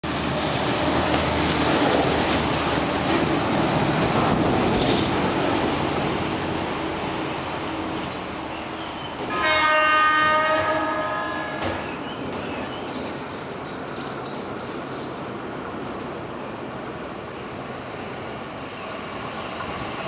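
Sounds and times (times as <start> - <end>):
train running: 0.0 - 20.0
train air horn blast: 9.3 - 11.8.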